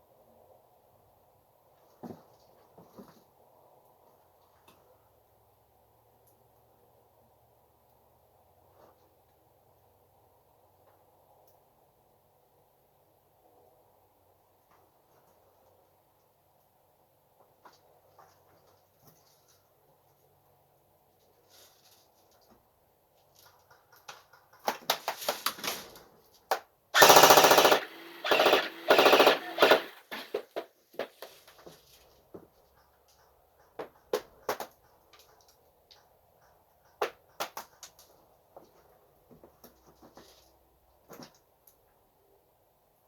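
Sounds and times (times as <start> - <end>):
airsoft gun firing bursts: 27.0 - 30.4.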